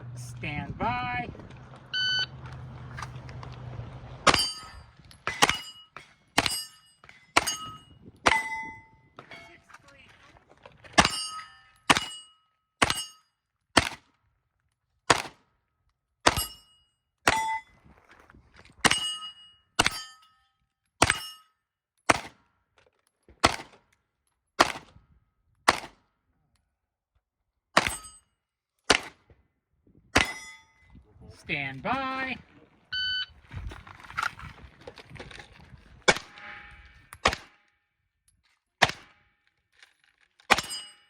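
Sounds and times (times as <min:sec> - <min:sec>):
pistol shots: 0:36.1 - 0:37.6, 0:38.8 - 0:39.1.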